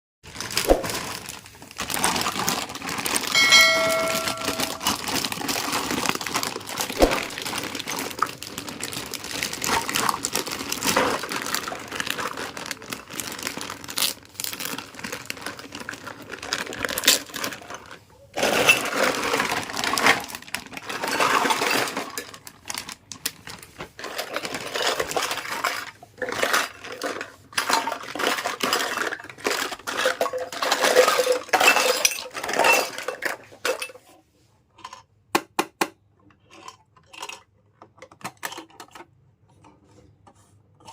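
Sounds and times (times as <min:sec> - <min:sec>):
packaging clicks taps and crinkling: 0:00.3 - 0:03.4, 0:04.1 - 0:18.0, 0:18.7 - 0:31.5
brief ringing tone: 0:03.4 - 0:05.0.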